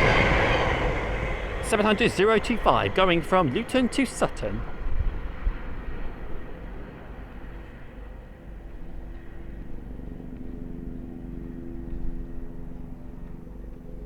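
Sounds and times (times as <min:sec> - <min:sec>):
low rumble: 0:00.0 - 0:05.3
helicopter droning: 0:00.0 - 0:14.0.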